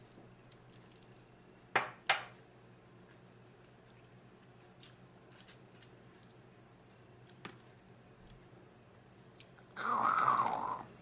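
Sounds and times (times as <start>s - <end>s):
faint eating clicks: 2.4s - 9.8s.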